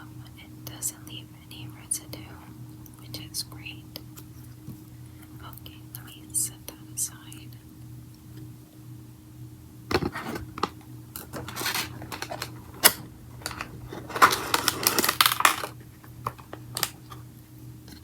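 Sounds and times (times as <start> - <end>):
packaging rustling: 9.9 - 17.2
plastic containers clicking and knocking: 9.9 - 17.2.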